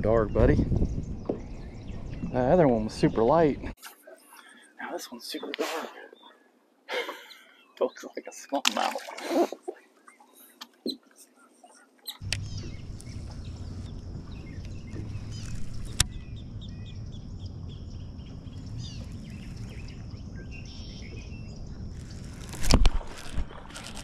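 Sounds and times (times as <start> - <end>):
steady low rumble: 0.0 - 3.8, 12.2 - 24.0
birds chirping: 0.0 - 24.0.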